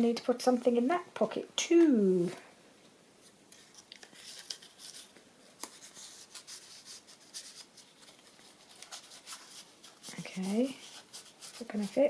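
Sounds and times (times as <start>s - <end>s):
paper rustling and rubbing: 3.2s - 12.0s.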